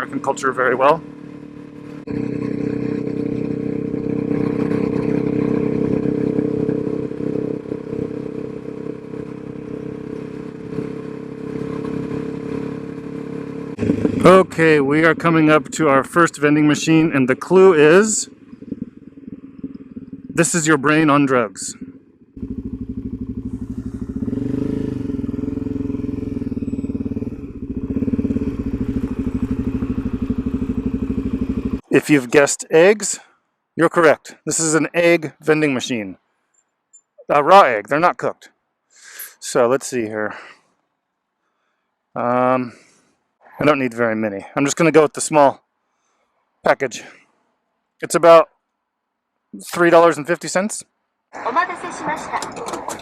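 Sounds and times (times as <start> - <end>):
motorcycle engine cruising: 0.0 - 32.0
road and wind noise: 0.0 - 32.4, 51.3 - 53.0.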